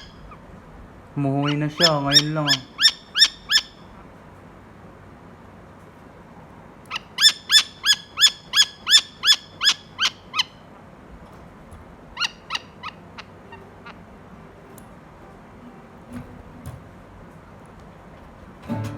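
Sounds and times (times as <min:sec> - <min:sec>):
falcon calling: 0:01.4 - 0:03.9, 0:06.9 - 0:10.6, 0:12.2 - 0:14.4.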